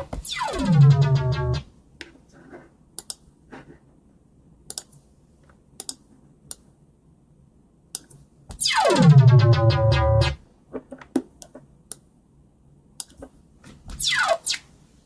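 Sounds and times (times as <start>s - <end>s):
falling synth tone: 0.2s - 1.6s, 8.6s - 10.4s
soft keyboard and mouse clicks: 3.0s - 3.2s, 4.7s - 6.7s, 7.9s - 8.2s, 13.0s - 13.4s.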